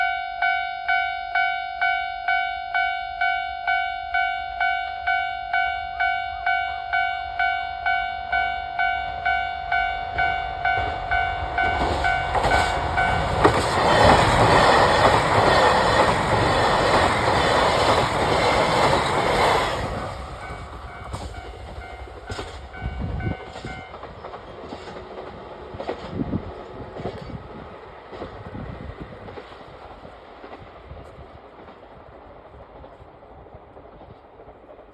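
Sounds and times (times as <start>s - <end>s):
diesel train passing: 3.8s - 34.9s
train wheel clacks: 10.7s - 34.9s.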